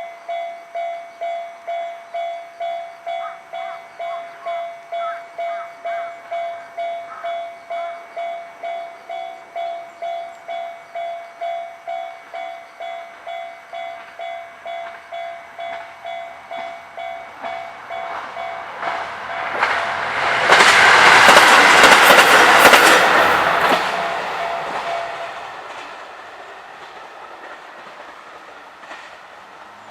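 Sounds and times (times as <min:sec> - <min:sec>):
diesel train passing: 0:05.9 - 0:29.9.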